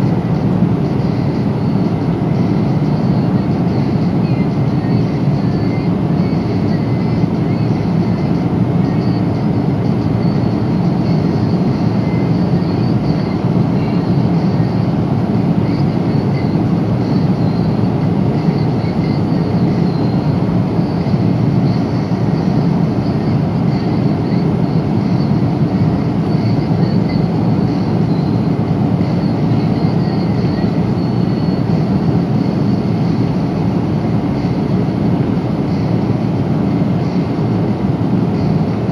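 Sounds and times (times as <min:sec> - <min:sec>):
airplane cabin airflow and engine rush: 0:00.0 - 0:38.9.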